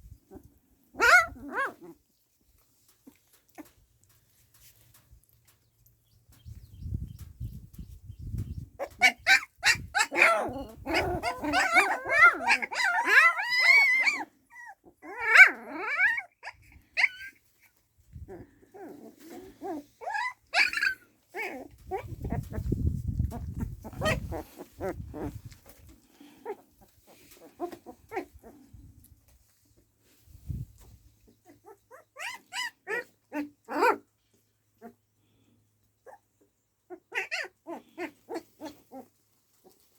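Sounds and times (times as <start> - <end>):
dog barking and yelping: 0.4 - 2.0, 8.8 - 17.4, 18.3 - 22.7, 23.3 - 25.4, 26.4 - 28.6, 31.4 - 34.1, 36.9 - 39.1.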